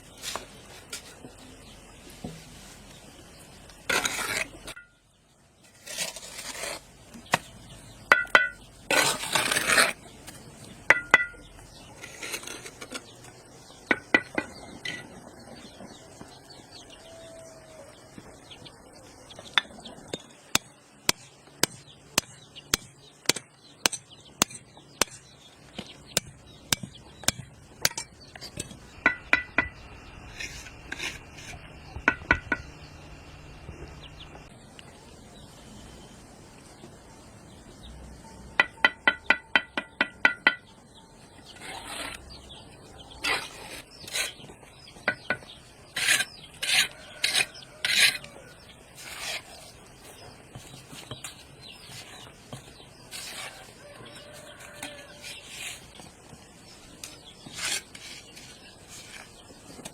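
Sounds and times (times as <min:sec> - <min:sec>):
short scrapes: 0:53.1 - 0:56.0.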